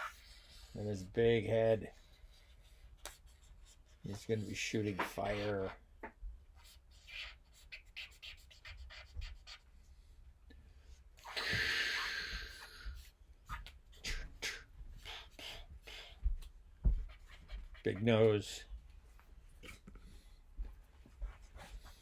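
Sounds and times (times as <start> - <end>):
marker pen scratching on paper: 0.0 - 0.8, 2.2 - 5.8, 6.5 - 9.7, 12.6 - 14.3, 16.9 - 18.6
breathy mouthed hiss: 11.2 - 12.8.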